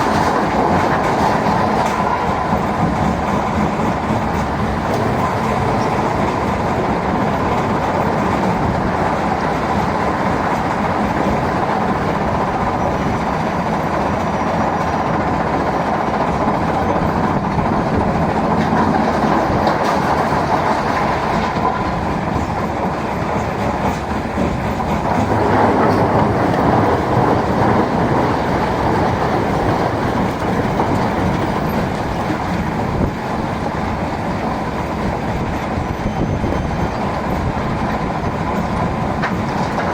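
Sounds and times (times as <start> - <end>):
stone crusher rumbling: 23.8 - 32.3.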